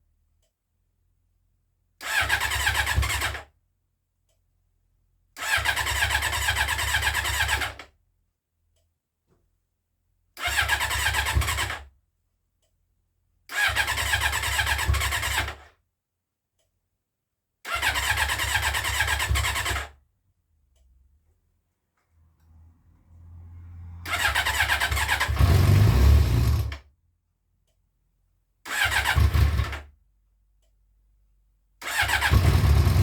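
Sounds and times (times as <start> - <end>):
electric starter cranking engine: 2.0 - 3.4, 5.4 - 7.8, 10.4 - 11.8, 13.5 - 15.6, 17.7 - 20.0, 24.0 - 26.8, 28.7 - 29.9, 31.8 - 33.0.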